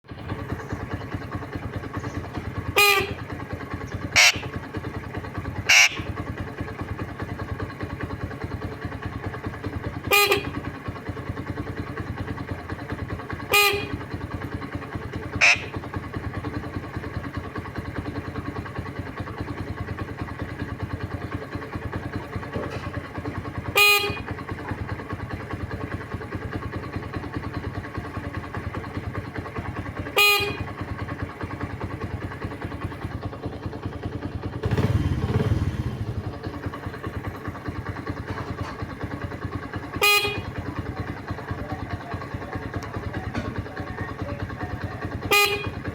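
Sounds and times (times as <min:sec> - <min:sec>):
parrot mimicking horn honks: 0:02.8 - 0:03.2, 0:04.1 - 0:04.5, 0:05.6 - 0:06.1, 0:10.1 - 0:10.6, 0:13.5 - 0:14.0, 0:15.4 - 0:15.8, 0:23.8 - 0:24.2.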